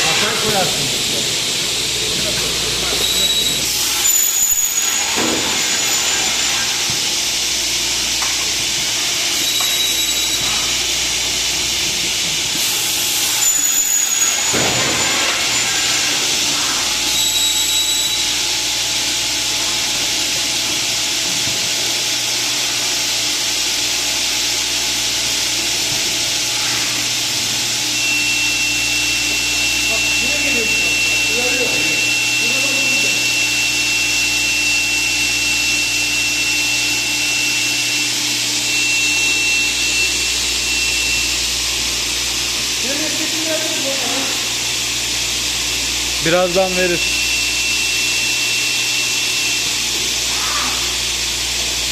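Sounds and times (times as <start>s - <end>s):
high-pitched spindle whine: 0.0s - 20.4s, 26.6s - 51.9s
machining center running: 0.0s - 51.9s.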